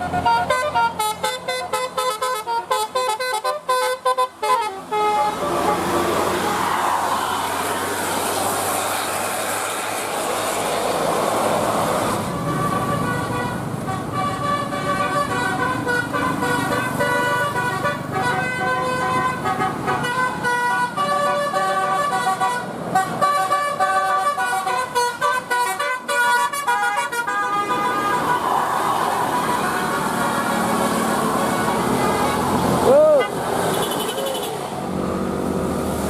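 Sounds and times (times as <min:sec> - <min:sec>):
bus horn melody: 0:00.0 - 0:06.7, 0:12.2 - 0:34.6
bus road and engine noise: 0:00.0 - 0:36.0.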